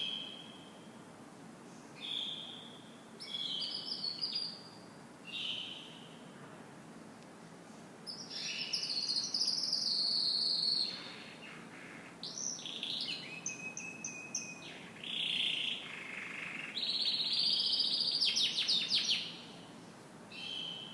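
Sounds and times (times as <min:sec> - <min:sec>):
canary singing trills: 0:02.0 - 0:06.1, 0:08.1 - 0:19.5, 0:20.3 - 0:20.9.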